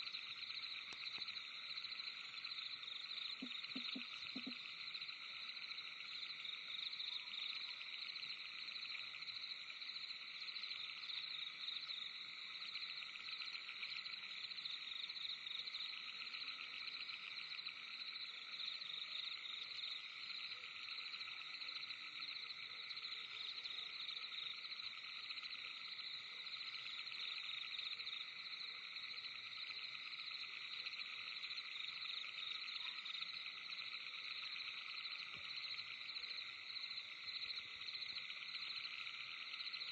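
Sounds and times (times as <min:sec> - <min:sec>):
lower insect trilling: 0:03.4 - 0:04.6.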